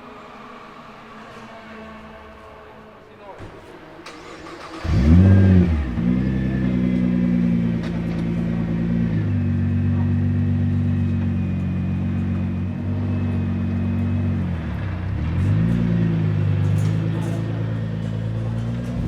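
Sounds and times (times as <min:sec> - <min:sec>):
car engine idling: 0:03.8 - 0:19.0.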